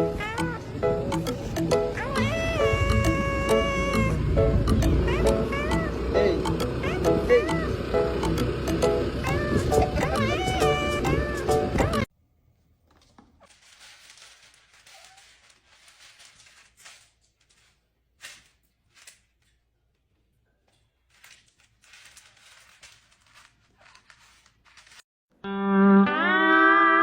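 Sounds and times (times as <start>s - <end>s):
faint rustling and crinkling: 12.8s - 25.0s.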